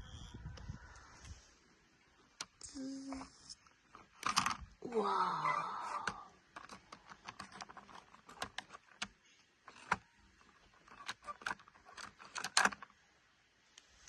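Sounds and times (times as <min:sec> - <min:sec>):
plastic toy cars clicking: 0:02.4 - 0:04.7, 0:06.0 - 0:12.9.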